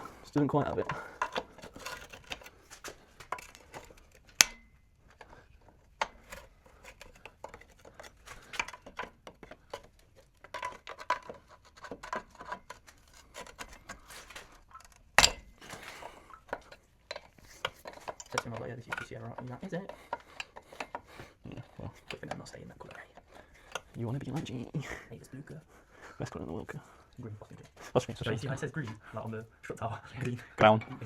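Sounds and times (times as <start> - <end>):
hand tools clicking and clinking: 0.0 - 24.6
sharp metal knocks: 15.2 - 15.7.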